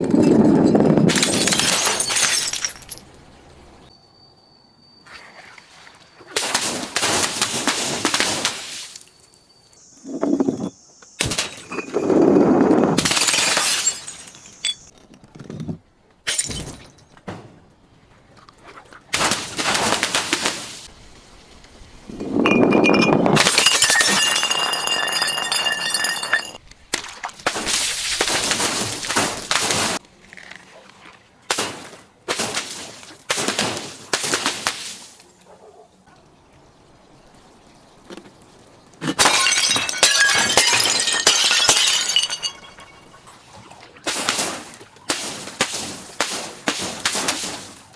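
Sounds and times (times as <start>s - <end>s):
glass bottles shattering: 0.2s - 3.1s, 10.1s - 12.3s, 12.9s - 14.9s, 16.3s - 17.1s, 22.2s - 26.6s, 39.0s - 43.2s.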